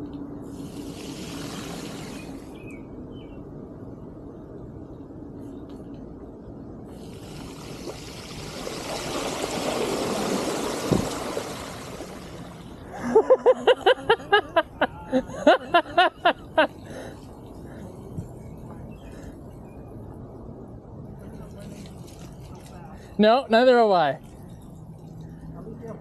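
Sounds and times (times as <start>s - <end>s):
bicycle tyres splashing through water: 0.5s - 2.7s, 6.9s - 13.1s, 21.3s - 23.1s.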